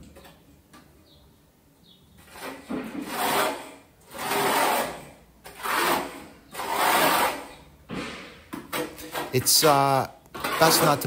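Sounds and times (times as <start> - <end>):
trowel scraping mortar: 2.2 - 7.7, 8.6 - 11.0.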